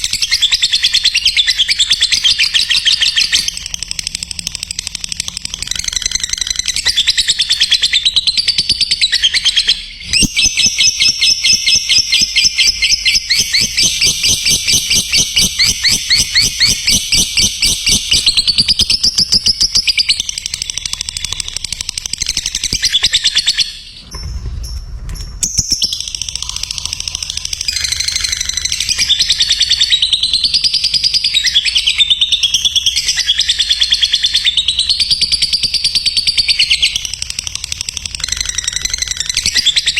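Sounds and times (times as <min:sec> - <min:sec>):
lovebird chattering trill: 0:00.0 - 0:24.0, 0:25.5 - 0:39.9.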